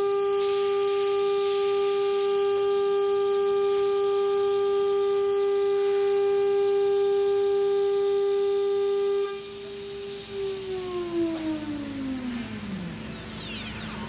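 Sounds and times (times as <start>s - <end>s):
hiss of machining: 0.0s - 13.3s
router spindle whine: 0.0s - 14.0s.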